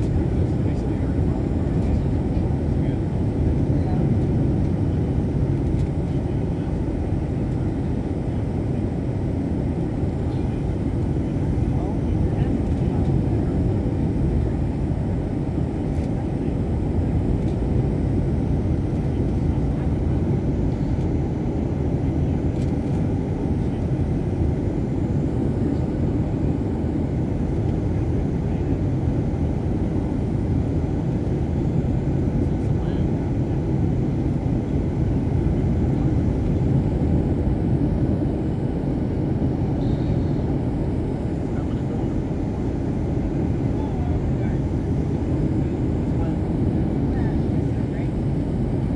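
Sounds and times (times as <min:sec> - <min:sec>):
airplane engines and airflow rumble: 0:00.0 - 0:48.9.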